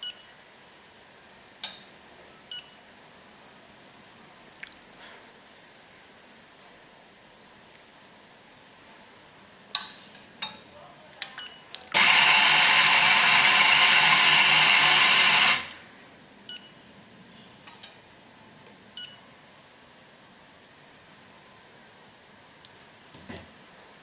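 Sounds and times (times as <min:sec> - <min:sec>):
coffee grinder motor whining: 0:11.9 - 0:15.8.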